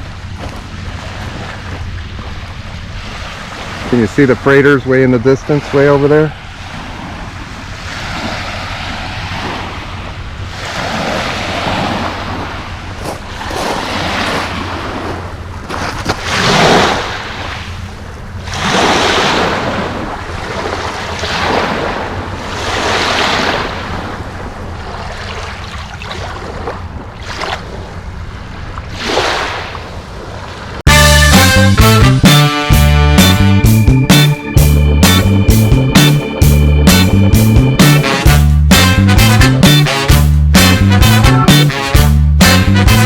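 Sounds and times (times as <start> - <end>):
low rumble of wind: 0.0 - 30.8, 33.8 - 41.3
waves washing onto shore: 0.0 - 30.8.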